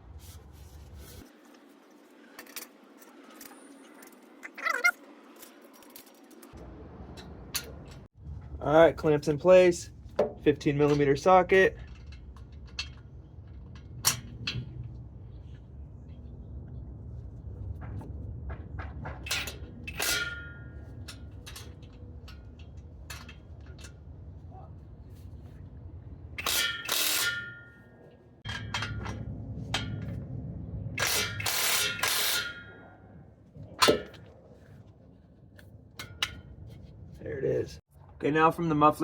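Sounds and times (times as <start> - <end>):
ratchet wrench clicking: 26.4 - 27.6, 31.0 - 32.6.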